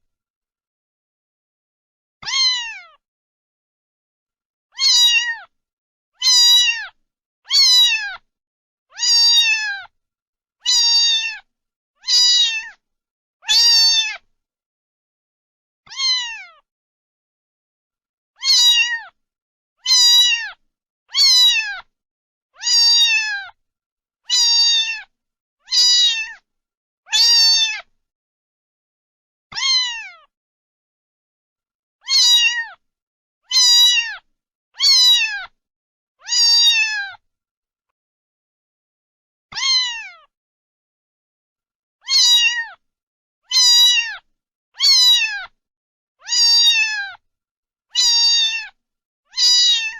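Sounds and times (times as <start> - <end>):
cat meowing: 2.2 - 3.0, 4.7 - 5.5, 6.2 - 8.2, 8.9 - 9.9, 10.6 - 12.8, 13.4 - 14.2, 15.9 - 16.7, 18.4 - 19.2, 19.8 - 21.9, 22.6 - 23.6, 24.3 - 25.1, 25.7 - 26.4, 27.1 - 27.9, 29.5 - 30.3, 32.0 - 32.8, 33.5 - 35.6, 36.2 - 37.2, 39.5 - 40.3, 42.0 - 42.8, 43.5 - 45.6, 46.2 - 47.2, 48.0 - 49.9.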